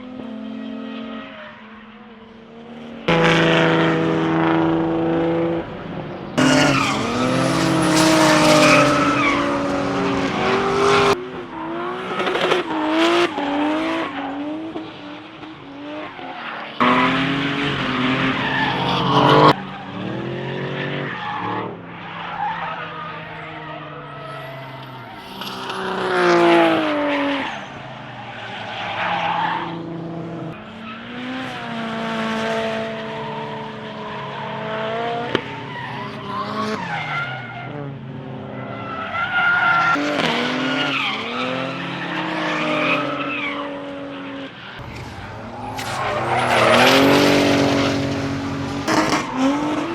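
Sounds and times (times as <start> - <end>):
race car engines revving: 0.0 - 49.9
tyres squealing and skidding: 5.9 - 31.6, 33.1 - 49.9.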